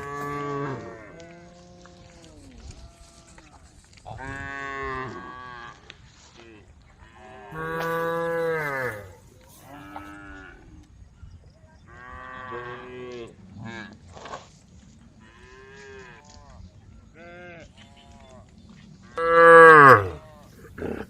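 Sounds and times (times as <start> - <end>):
cows mooing: 7.5 - 10.4, 19.2 - 21.0.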